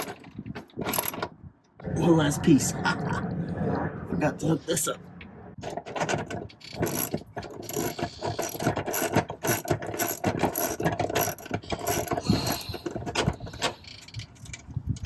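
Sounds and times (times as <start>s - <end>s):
ratchet wrench clicking: 6.6s - 14.6s.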